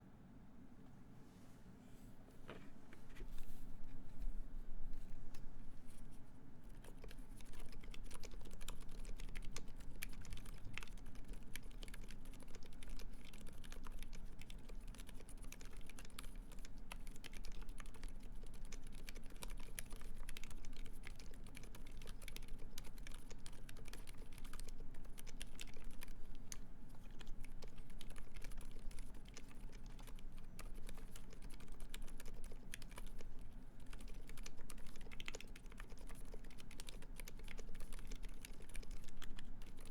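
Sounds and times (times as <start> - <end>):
quiet fast keyboard typing: 6.7 - 39.9.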